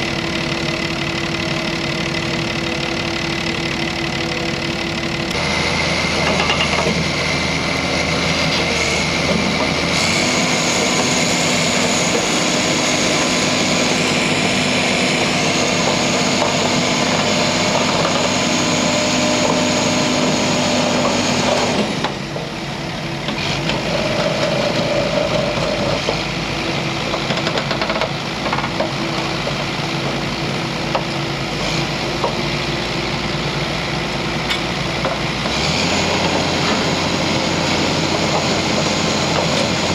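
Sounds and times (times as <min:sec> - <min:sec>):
drill rig diesel engine running: 0:00.0 - 0:39.9.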